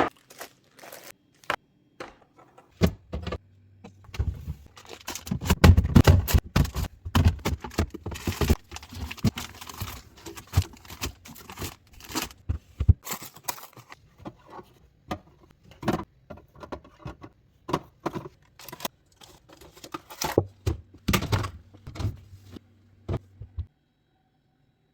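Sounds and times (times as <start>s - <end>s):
packaging crinkling and tearing: 0.0s - 1.2s, 4.7s - 5.6s, 7.6s - 12.4s.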